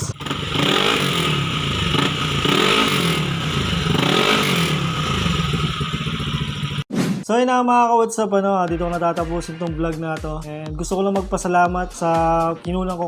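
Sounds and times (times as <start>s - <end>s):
scooter engine revving: 0.0s - 6.9s.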